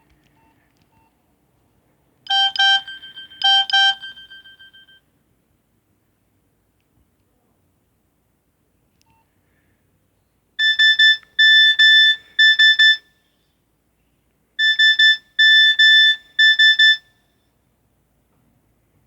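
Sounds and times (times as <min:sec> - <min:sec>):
phone beeping ringtone: 0:02.3 - 0:05.0, 0:10.6 - 0:13.0, 0:14.6 - 0:17.0.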